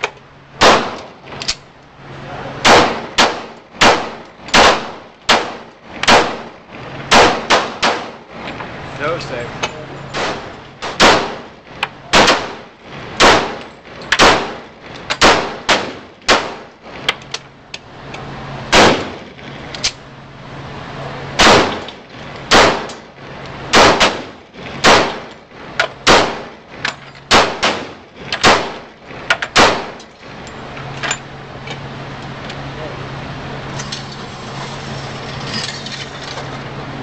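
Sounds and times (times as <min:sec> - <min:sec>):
pistol shots echoing: 0:00.6 - 0:01.0, 0:02.6 - 0:06.5, 0:07.1 - 0:08.2, 0:10.2 - 0:11.5, 0:12.1 - 0:13.6, 0:14.2 - 0:14.6, 0:15.2 - 0:16.7, 0:18.7 - 0:19.2, 0:21.4 - 0:21.9, 0:22.5 - 0:23.0, 0:23.7 - 0:25.3, 0:26.0 - 0:26.6, 0:27.3 - 0:28.8, 0:29.5 - 0:30.0.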